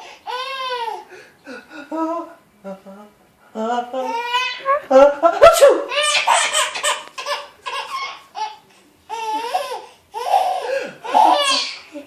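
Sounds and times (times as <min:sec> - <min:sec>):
baby laughing: 0:04.0 - 0:12.0.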